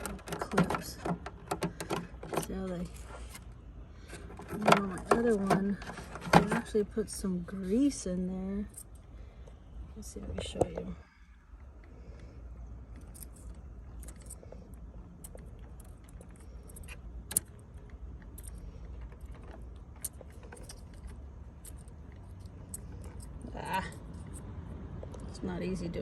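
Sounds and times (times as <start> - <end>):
plastic clicks and rattles: 0.0 - 2.9.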